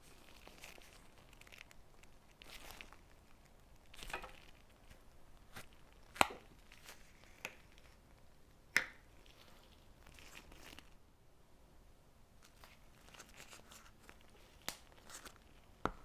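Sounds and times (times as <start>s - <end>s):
hands squishing slime: 0.0s - 11.0s
crisp snaps: 0.1s - 11.0s, 12.4s - 16.0s.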